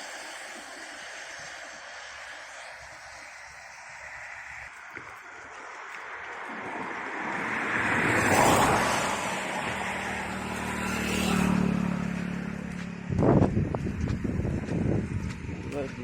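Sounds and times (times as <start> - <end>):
vehicle engine hum passing: 0.0 - 16.0
vehicle rushing past: 4.0 - 16.0.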